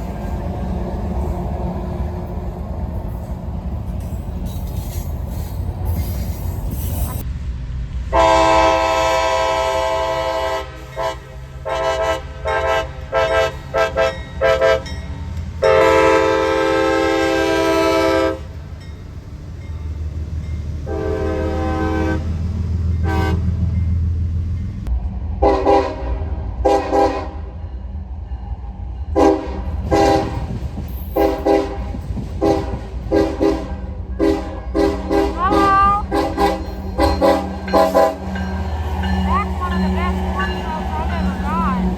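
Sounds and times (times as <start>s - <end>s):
low train rumble: 0.0s - 41.9s
train horn blasts: 8.1s - 18.5s, 20.8s - 23.8s, 25.4s - 27.6s, 29.2s - 41.9s
horn short toots: 31.2s - 38.4s.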